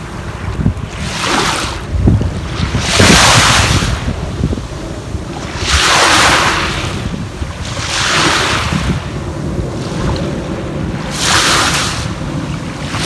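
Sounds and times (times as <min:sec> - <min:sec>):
sea waves washing in: 0:00.0 - 0:13.0
wind rumbling on microphone: 0:00.0 - 0:13.0.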